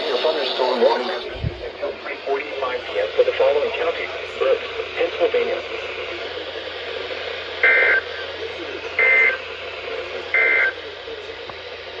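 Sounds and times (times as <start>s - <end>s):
receiver static hiss: 0.0s - 12.0s
digital data tone bursts: 7.6s - 8.1s, 9.0s - 9.5s, 10.3s - 10.8s.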